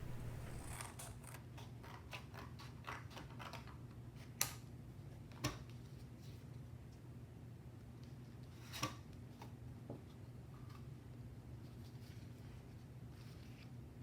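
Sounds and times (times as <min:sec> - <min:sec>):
scissors cutting paper: 0:00.0 - 0:00.9.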